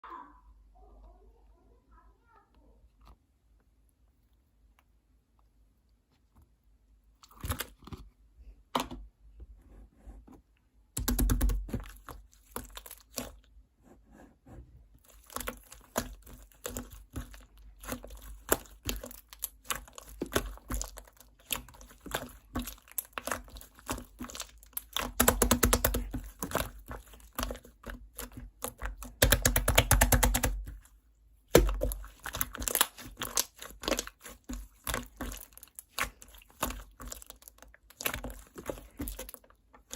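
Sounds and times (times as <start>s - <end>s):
slime squished by hand: 11.0s - 13.5s, 15.0s - 39.9s.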